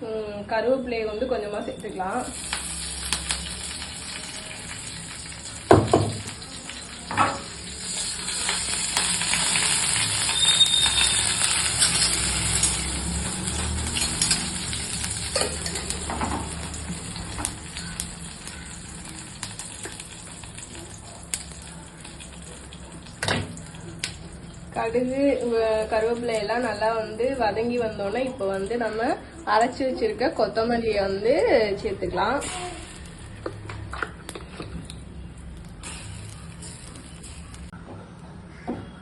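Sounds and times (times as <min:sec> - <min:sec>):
seeds sizzling in hot oil: 0:01.2 - 0:34.4, 0:35.0 - 0:37.7.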